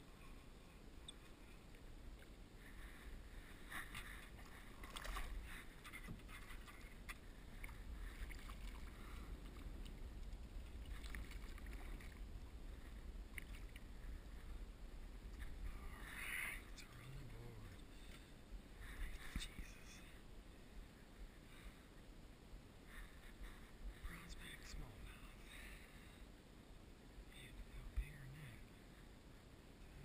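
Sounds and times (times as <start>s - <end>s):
water splashing and sloshing: 1.2s - 16.2s.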